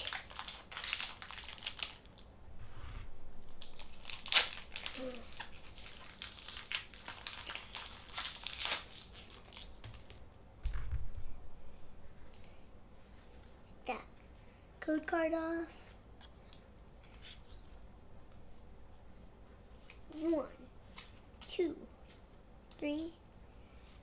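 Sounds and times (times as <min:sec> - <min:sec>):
foil wrapper tearing and crinkling: 0:00.0 - 0:02.2, 0:03.5 - 0:10.2.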